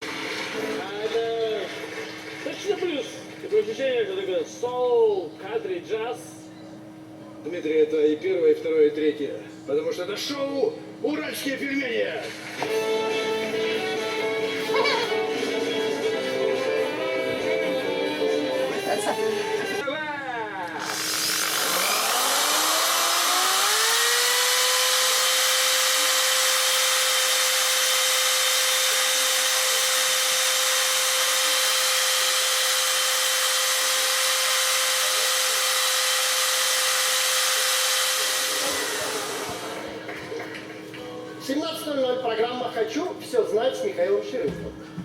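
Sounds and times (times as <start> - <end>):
electric drill motor whining: 20.7 - 40.0.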